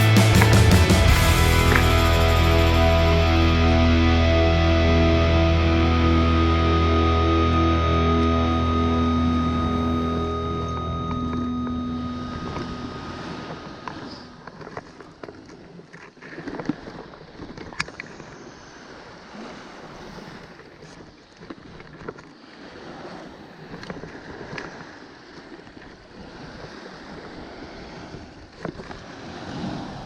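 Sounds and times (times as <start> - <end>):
surf washing onto beach: 22.5 - 30.0.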